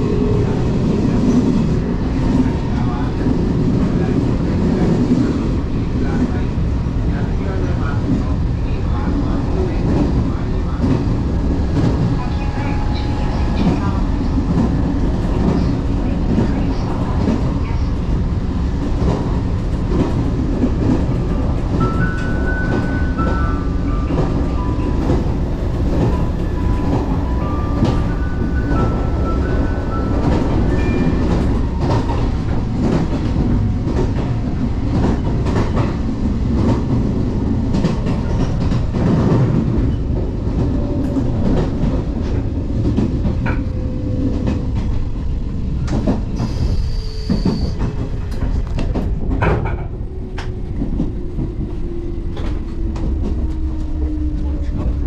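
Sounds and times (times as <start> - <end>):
train rumble: 0.0 - 55.0
rail-joint clicks: 45.8 - 55.0.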